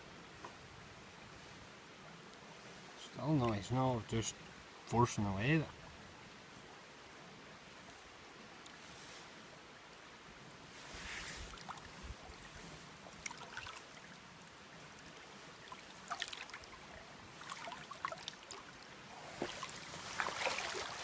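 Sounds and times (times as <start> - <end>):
river water trickling and lapping: 0.0 - 21.0
small water splashes: 11.4 - 21.0.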